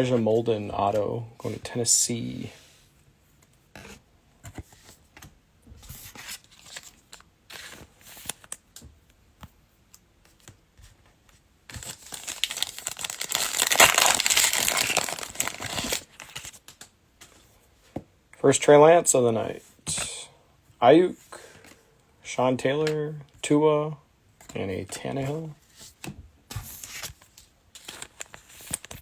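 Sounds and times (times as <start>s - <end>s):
cards rustling and clicking: 11.7s - 17.4s, 26.0s - 29.0s
foil pack tearing and crinkling: 11.8s - 16.6s.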